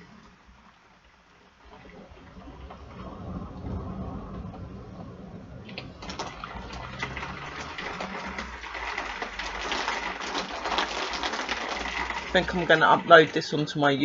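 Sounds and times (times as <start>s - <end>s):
heavy rain pouring: 0.0s - 14.0s
low rumble: 1.7s - 10.8s.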